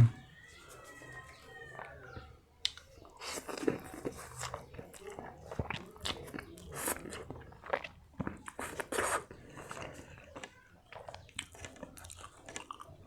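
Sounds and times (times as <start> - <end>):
person chewing crunchy food: 2.6 - 13.0.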